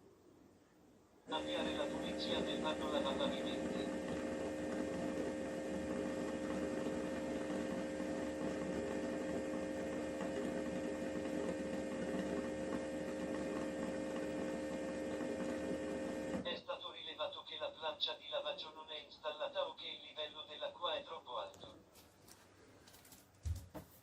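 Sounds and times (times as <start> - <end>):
robot vacuum station motor hum: 1.3 - 16.5.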